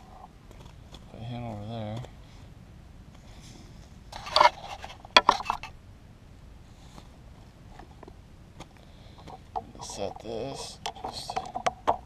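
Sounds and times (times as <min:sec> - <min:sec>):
net trap rustling and scraping: 0:03.4 - 0:05.8.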